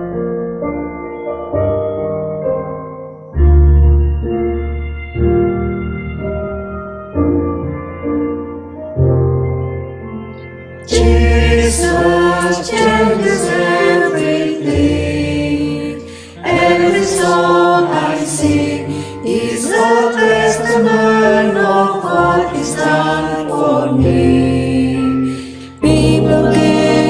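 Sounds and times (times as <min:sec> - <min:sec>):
choir singing: 0:10.8 - 0:27.0.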